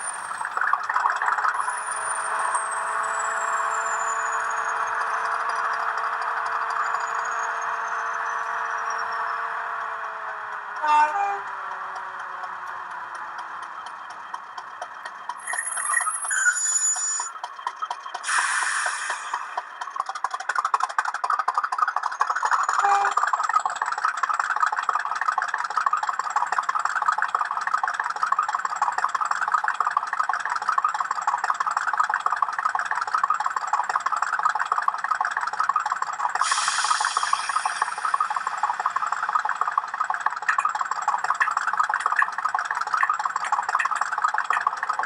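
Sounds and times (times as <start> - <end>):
model locomotive engine sound: 0.0 - 45.0
whistle rising in pitch: 1.5 - 5.2, 10.8 - 11.5, 15.4 - 17.4, 18.2 - 19.6, 36.4 - 39.2.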